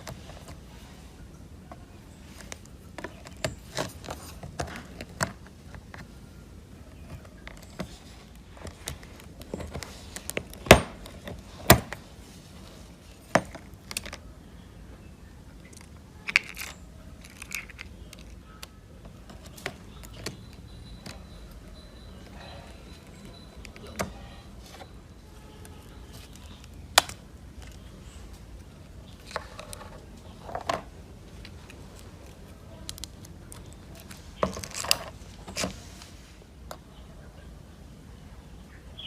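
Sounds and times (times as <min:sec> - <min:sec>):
small tools clicking and tapping: 0:15.7 - 0:24.9.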